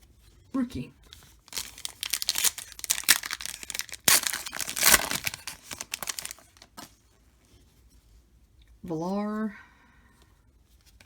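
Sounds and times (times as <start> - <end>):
plastic wrapper crinkling and tearing: 1.5 - 6.9.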